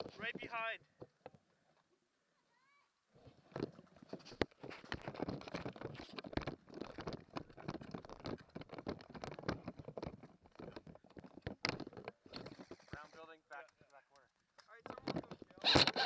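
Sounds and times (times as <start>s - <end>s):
gear clicking and rattling: 3.5s - 16.0s.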